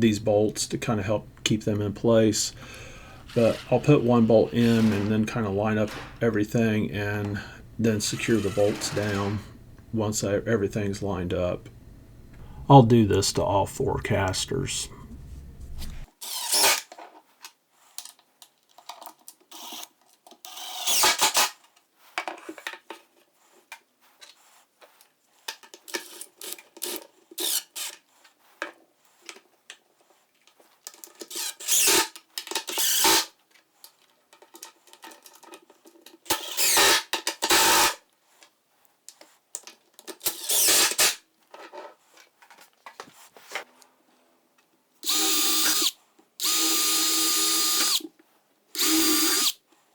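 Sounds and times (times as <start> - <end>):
rubbing and scraping on hardware: 0.6 - 10.1, 13.4 - 16.1
short rasping bursts: 7.5 - 9.7.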